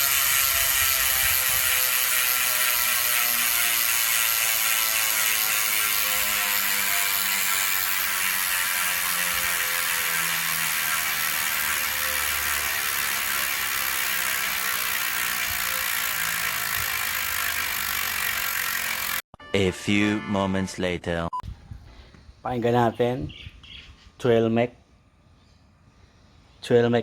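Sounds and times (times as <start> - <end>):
bicycle hub ratcheting buzz: 0.0 - 19.2.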